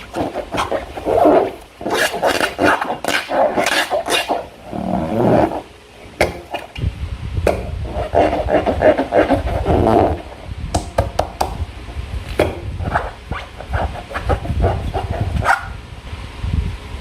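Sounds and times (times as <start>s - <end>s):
slime squelching: 0.0s - 6.7s.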